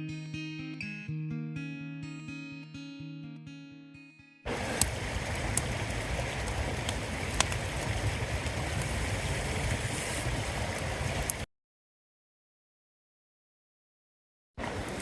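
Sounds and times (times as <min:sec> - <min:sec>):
campfire crackling: 0:04.5 - 0:11.5, 0:14.6 - 0:15.0.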